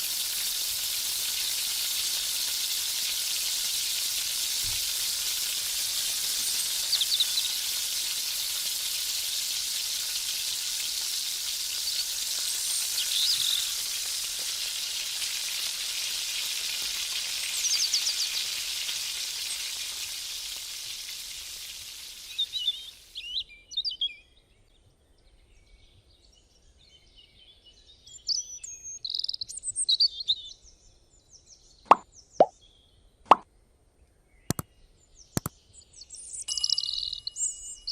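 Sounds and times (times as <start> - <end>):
food sizzling in hot oil: 0.0 - 23.3
birds chirping: 6.4 - 7.7, 11.8 - 13.9, 34.5 - 37.9.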